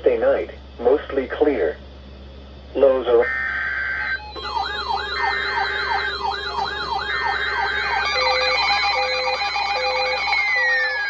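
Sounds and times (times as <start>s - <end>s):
buzzing alert data tones: 3.2s - 11.0s
on-off beeping: 3.2s - 11.0s
warbling siren alarm: 3.2s - 11.0s
long falling tone: 4.0s - 11.0s.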